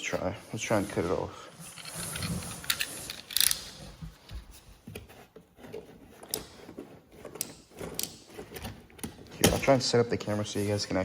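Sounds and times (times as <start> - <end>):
hands handling objects: 0.0 - 10.6.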